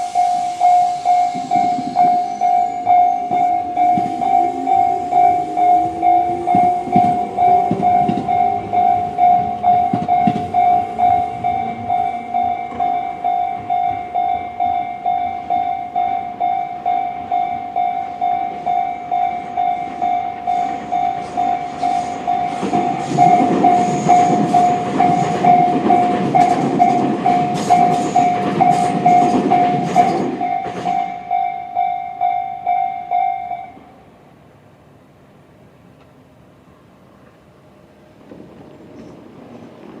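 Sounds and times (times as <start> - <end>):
electric train motor whine: 0.0 - 31.4
electronic level-crossing bell: 0.0 - 33.8
train wheel clatter: 0.0 - 33.9, 38.2 - 40.0.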